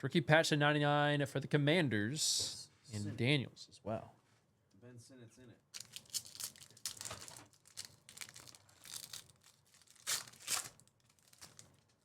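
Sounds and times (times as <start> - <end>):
card pack wrappers tearing: 5.8 - 12.0.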